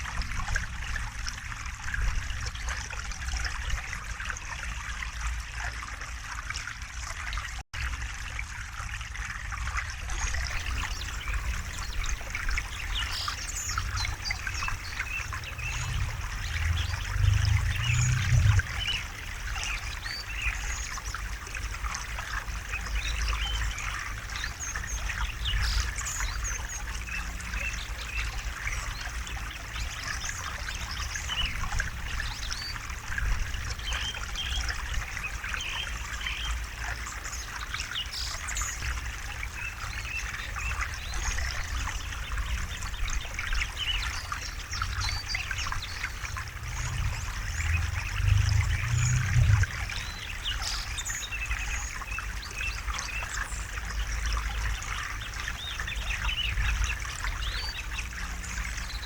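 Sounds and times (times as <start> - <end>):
river water babbling over rocks: 10.4 - 59.0
low rumble: 10.5 - 20.2, 45.8 - 50.6.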